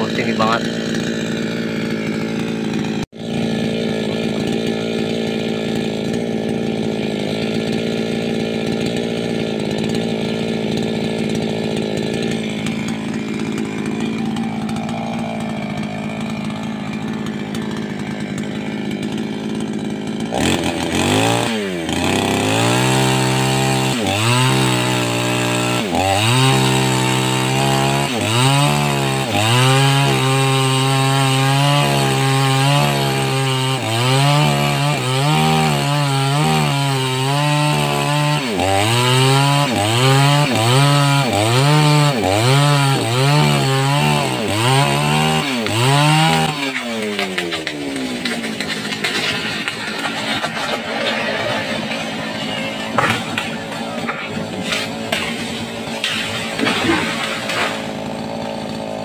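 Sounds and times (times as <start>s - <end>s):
chainsaw running at high speed: 0.0s - 59.0s.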